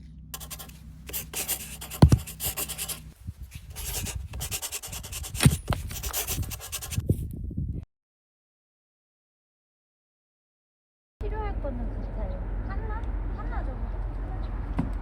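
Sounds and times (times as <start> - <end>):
wood scraping and rubbing: 0.4 - 4.2
heavy thuds of firewood: 2.0 - 2.4.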